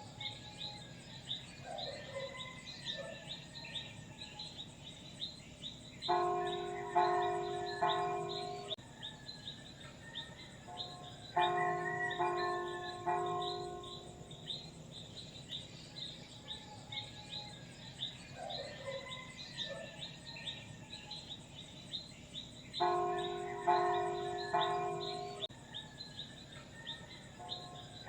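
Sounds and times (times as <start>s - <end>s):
church bell ringing: 6.0s - 8.8s, 10.8s - 14.8s, 22.8s - 25.5s.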